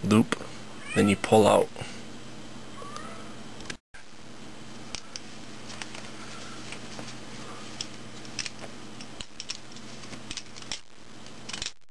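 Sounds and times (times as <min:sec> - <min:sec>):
steady low hum: 0:00.0 - 0:11.8.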